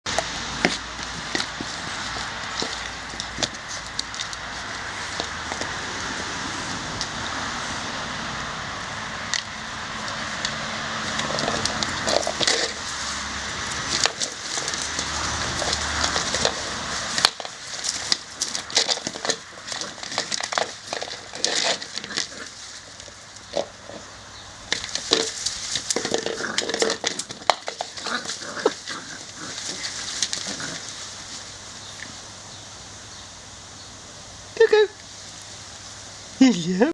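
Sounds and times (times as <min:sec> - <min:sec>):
puppy playing clicks and knocks: 0:00.1 - 0:05.7, 0:09.3 - 0:24.1, 0:24.7 - 0:31.4.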